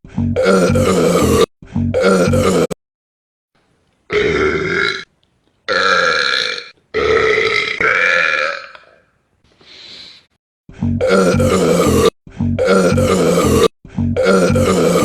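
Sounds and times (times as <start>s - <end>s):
man burping: 0.1s - 2.8s, 4.1s - 5.1s, 5.7s - 9.1s, 10.8s - 15.0s.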